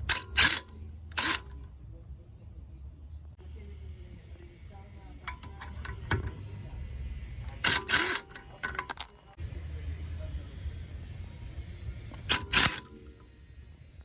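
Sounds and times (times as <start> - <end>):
metallic clinks and clatter: 5.3 - 6.5, 7.5 - 9.4, 12.1 - 13.3.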